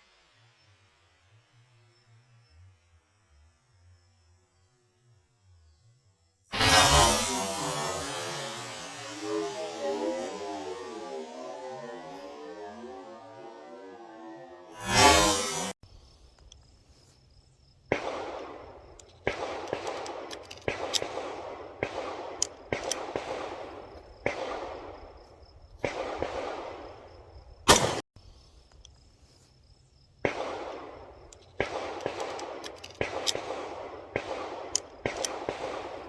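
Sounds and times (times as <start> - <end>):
pistol shots echoing: 17.9 - 25.0, 25.8 - 26.9, 27.7 - 28.0, 30.2 - 36.0.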